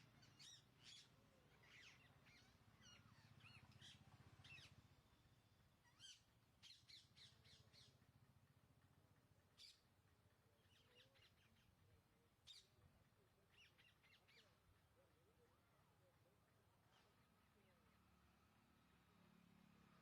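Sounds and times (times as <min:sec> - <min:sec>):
parakeets calling: 0:00.0 - 0:04.8.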